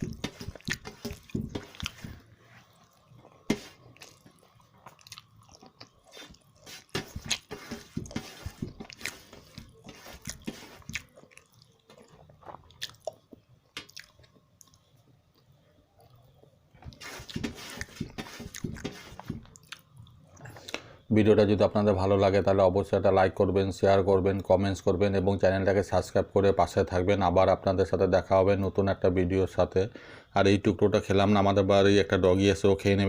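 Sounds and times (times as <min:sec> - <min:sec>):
person chewing food: 0:00.0 - 0:20.9
wet mouth clicks and smacks: 0:13.8 - 0:14.8.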